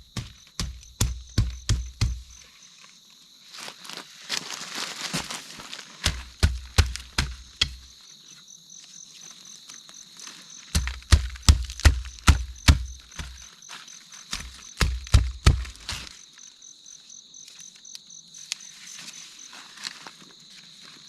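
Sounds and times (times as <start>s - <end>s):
dull thuds: 0.0s - 2.4s, 6.0s - 7.9s, 10.7s - 13.5s, 14.3s - 16.1s
insect chirring: 0.0s - 4.1s, 5.8s - 21.0s.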